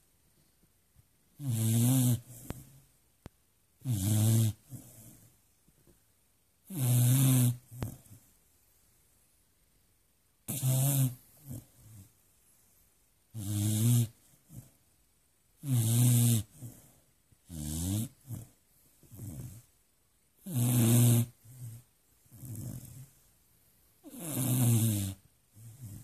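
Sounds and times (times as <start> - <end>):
dog snoring: 1.4 - 2.8, 3.8 - 5.3, 6.6 - 8.2, 10.5 - 12.2, 13.3 - 14.8, 15.6 - 19.7, 20.4 - 23.1, 24.0 - 26.0
soft breaths: 2.1 - 3.1, 4.5 - 6.1, 16.4 - 17.4, 21.2 - 26.0.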